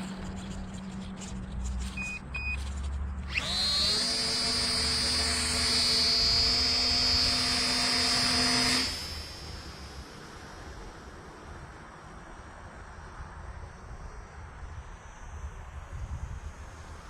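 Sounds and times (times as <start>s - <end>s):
electric motor and propeller whine: 0.0s - 17.0s
short electronic beeps: 1.9s - 2.7s.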